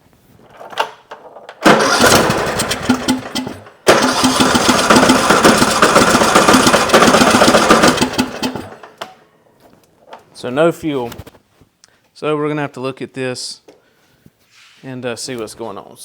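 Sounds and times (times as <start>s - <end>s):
mower engine cranking and firing: 0.5s - 9.2s.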